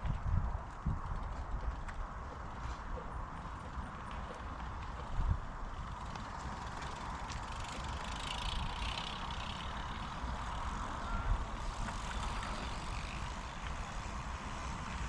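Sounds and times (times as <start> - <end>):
bike tyre and drivetrain rumble: 0.0 - 15.0
wind buffeting microphone: 0.0 - 15.0.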